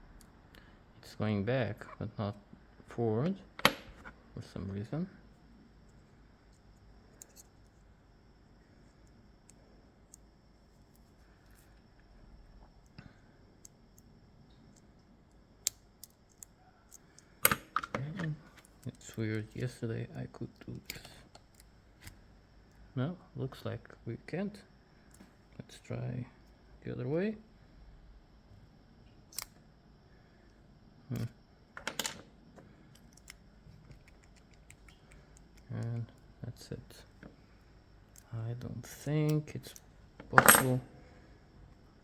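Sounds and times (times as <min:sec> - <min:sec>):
small metal lock parts clicking: 0:03.2 - 0:04.2, 0:06.5 - 0:07.8, 0:14.7 - 0:19.8, 0:20.7 - 0:22.2, 0:29.3 - 0:29.6, 0:31.1 - 0:36.3, 0:38.1 - 0:40.9.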